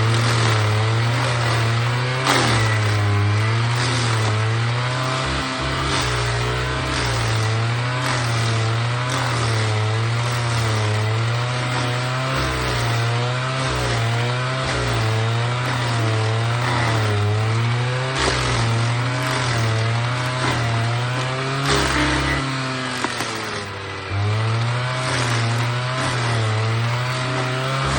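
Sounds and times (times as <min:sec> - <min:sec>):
cutter wheel grinding stump: 0:00.0 - 0:27.9
stump grinder engine running hard: 0:00.0 - 0:27.9.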